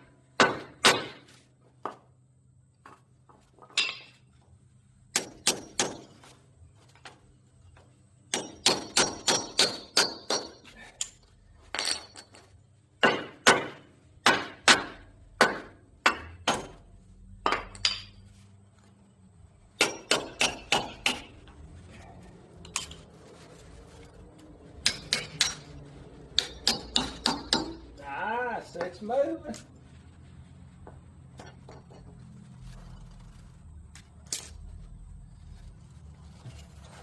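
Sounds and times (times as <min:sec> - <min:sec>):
hammer striking metal: 0:08.3 - 0:10.6, 0:13.0 - 0:16.8, 0:19.8 - 0:21.3, 0:24.8 - 0:25.7, 0:26.4 - 0:28.0.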